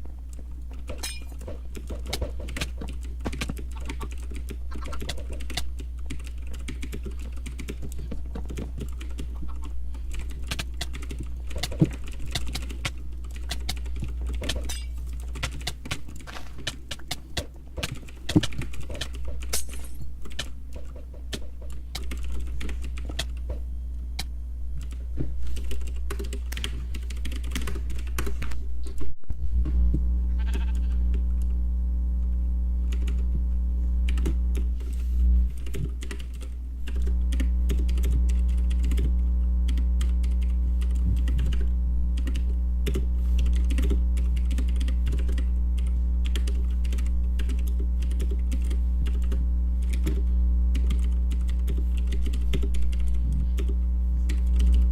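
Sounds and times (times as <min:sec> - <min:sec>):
low hum: 0:00.0 - 0:54.9
keyboard typing: 0:00.3 - 0:23.6, 0:24.2 - 0:28.5, 0:32.9 - 0:33.3, 0:34.1 - 0:54.9
steady buzzing tone: 0:29.4 - 0:35.7, 0:36.6 - 0:54.9.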